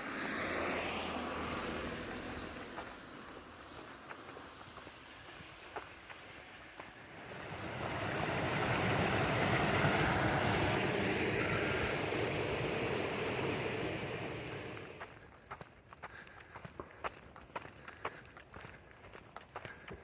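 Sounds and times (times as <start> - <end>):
vehicle passing by: 7.0 - 15.2.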